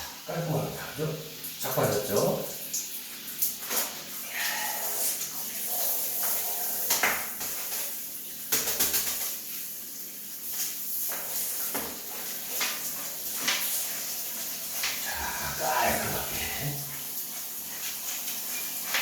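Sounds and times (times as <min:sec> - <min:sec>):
mop cloth scrubbing: 0:10.4 - 0:19.0
steady hiss: 0:12.4 - 0:19.0.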